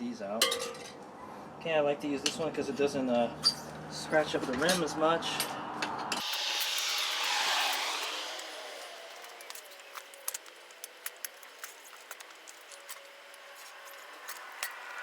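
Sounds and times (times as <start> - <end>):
tire iron clicking and scraping: 3.4 - 15.0.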